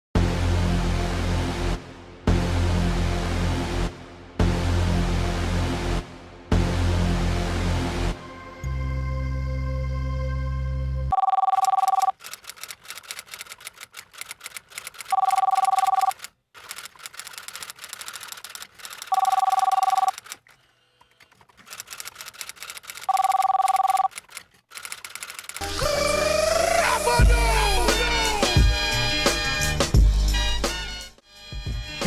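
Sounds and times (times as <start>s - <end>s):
telephone ringing: 11.1s - 12.3s, 14.4s - 20.5s, 21.7s - 25.3s.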